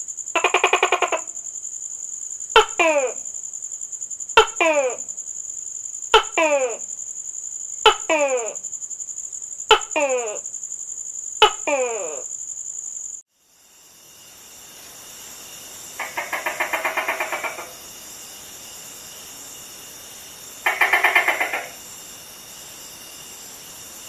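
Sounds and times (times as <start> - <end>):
high-pitched background hiss: 0.0 - 24.0
gecko chattering call: 0.4 - 1.4, 16.0 - 17.8, 20.6 - 21.8.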